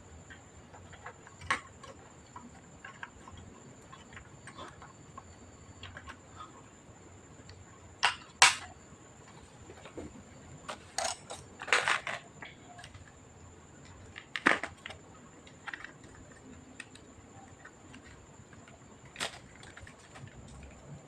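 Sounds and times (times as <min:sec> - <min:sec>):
small parts and tools clicking: 0:10.7 - 0:13.2, 0:13.8 - 0:20.8.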